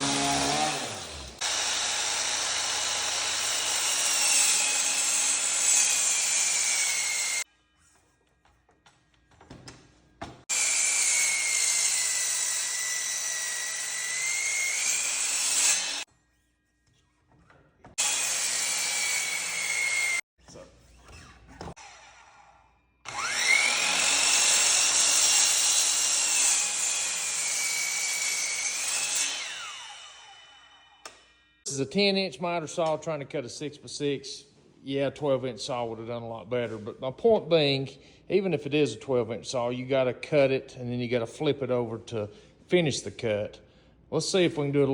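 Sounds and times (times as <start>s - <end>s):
power saw cutting wood: 0.0s - 7.4s, 10.5s - 16.1s, 17.9s - 20.2s, 21.7s - 31.2s.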